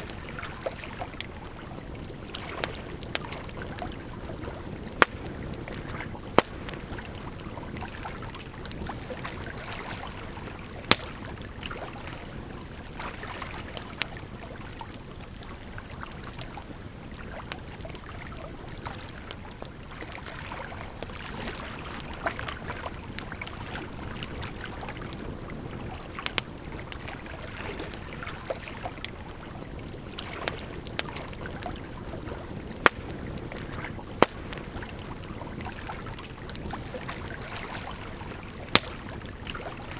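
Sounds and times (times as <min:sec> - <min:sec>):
flowing water rushing: 0:00.0 - 0:14.0, 0:30.1 - 0:39.9
wood fire crackling and popping: 0:00.0 - 0:19.8, 0:22.0 - 0:27.2, 0:27.8 - 0:39.9.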